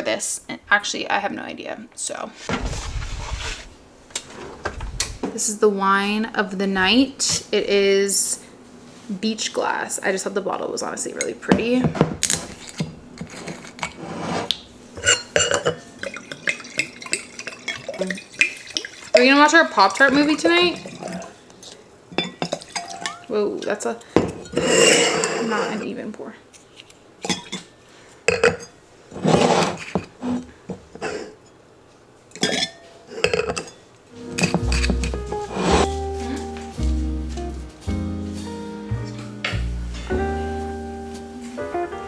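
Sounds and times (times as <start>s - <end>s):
glass bottle and glassware clinking: 15.0s - 18.6s, 22.1s - 23.3s, 28.3s - 28.8s, 32.4s - 33.8s, 34.4s - 35.8s
dishes and utensils clinking: 15.0s - 19.3s, 19.9s - 23.4s, 24.0s - 25.8s, 26.5s - 31.4s, 32.3s - 36.8s
background music: 34.2s - 42.0s.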